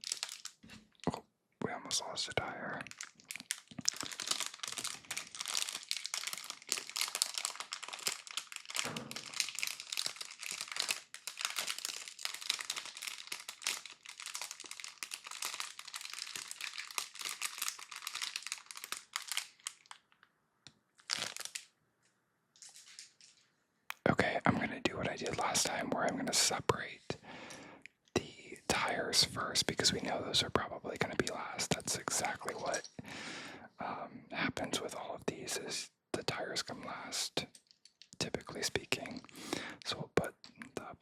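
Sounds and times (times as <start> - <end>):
plastic bags crinkling: 0.0 - 0.6, 2.4 - 20.3, 21.0 - 21.7, 22.6 - 23.5, 25.1 - 25.8, 31.0 - 33.0.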